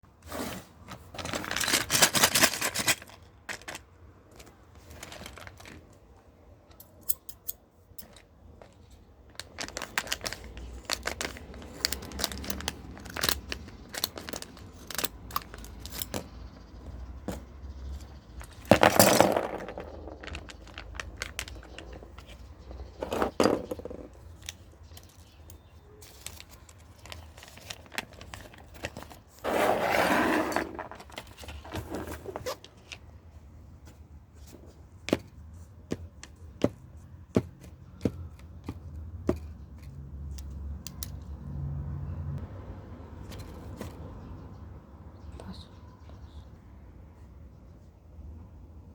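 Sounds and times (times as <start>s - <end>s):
package rustling and tearing: 9.4s - 15.8s.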